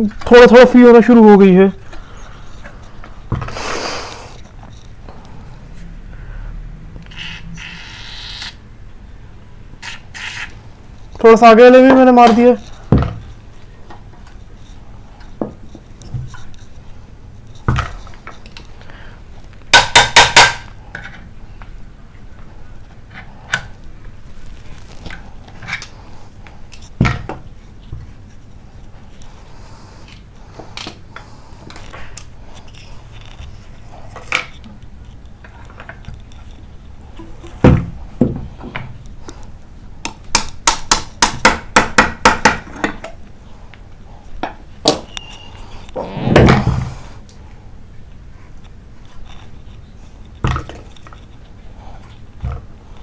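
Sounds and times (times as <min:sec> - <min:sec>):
rustling: 0:22.8 - 0:26.7.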